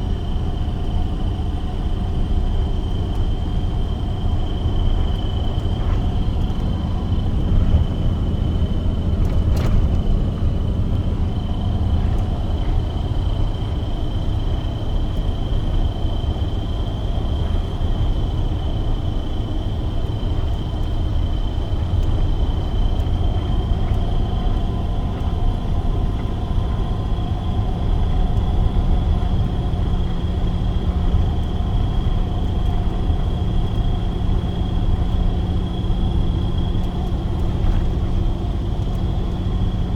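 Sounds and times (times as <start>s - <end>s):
truck engine and road rumble: 0.0s - 39.9s.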